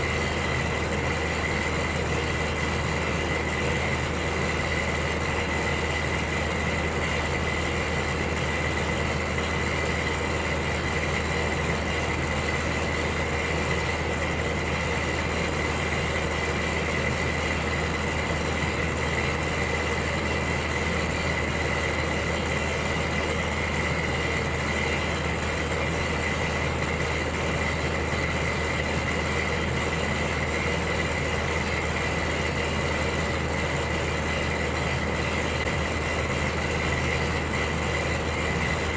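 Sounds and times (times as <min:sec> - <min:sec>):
electric heater whirring hum: 0:00.0 - 0:38.9.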